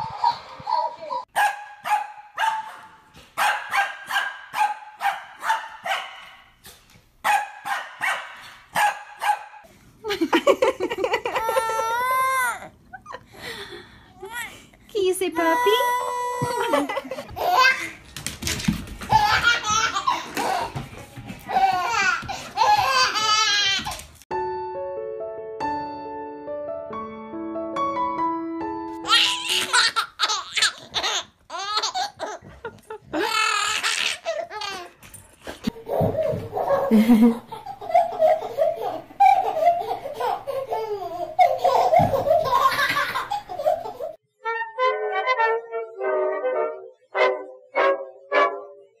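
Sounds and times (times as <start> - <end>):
baby laughing: 0.0 - 1.3, 10.4 - 13.3, 15.6 - 18.0, 19.0 - 24.1, 29.0 - 35.0, 35.7 - 44.2
young child laughing: 10.1 - 13.3, 16.4 - 18.0.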